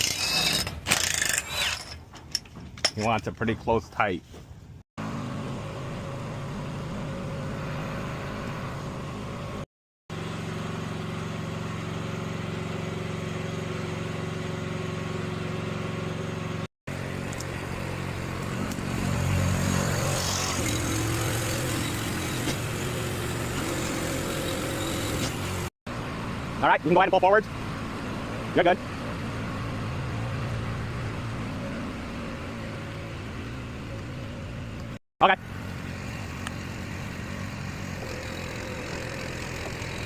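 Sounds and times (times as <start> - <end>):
truck engine running: 5.0 - 40.0.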